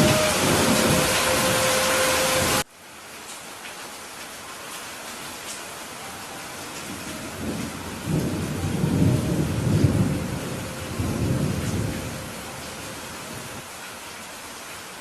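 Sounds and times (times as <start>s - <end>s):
thunder rumbling: 0.0s - 2.6s, 6.8s - 13.6s
heavy rain pouring: 0.0s - 15.0s.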